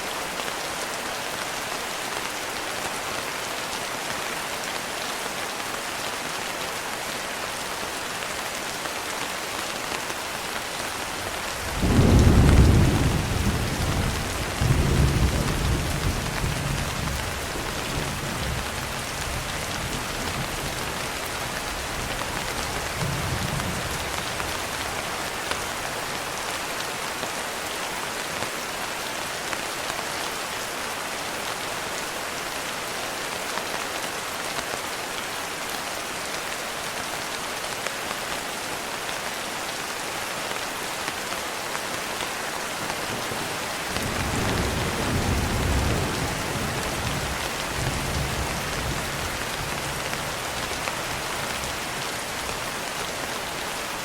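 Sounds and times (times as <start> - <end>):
steady rain: 0.0 - 54.0
distant thunder rumble: 11.7 - 18.7.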